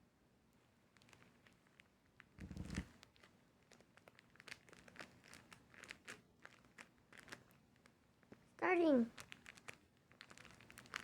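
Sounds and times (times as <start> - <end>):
crinkling and rustling materials: 0.6 - 11.0.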